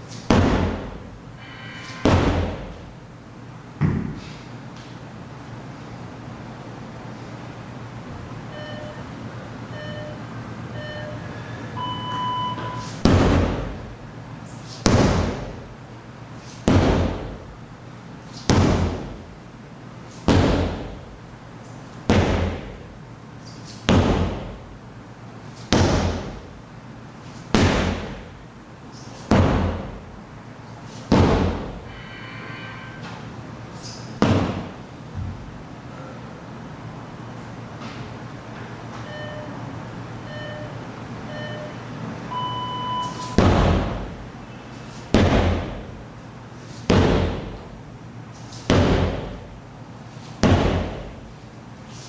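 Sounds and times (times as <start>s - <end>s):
sledgehammer striking heavily: 1.7s - 2.7s
interval timer beeps: 8.5s - 9.1s, 9.7s - 12.9s, 39.0s - 39.6s, 40.2s - 43.4s.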